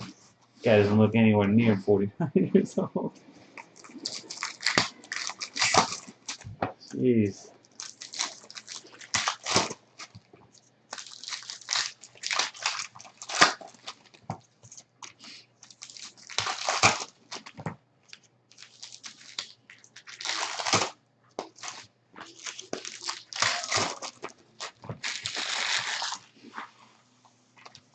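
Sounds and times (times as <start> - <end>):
card wrappers crinkling: 3.5 - 6.5, 7.6 - 26.6.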